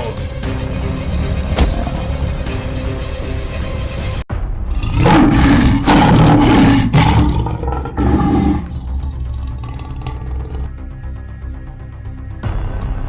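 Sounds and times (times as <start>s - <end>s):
background music: 0.0s - 13.0s
lion roaring and snarling: 4.7s - 10.7s.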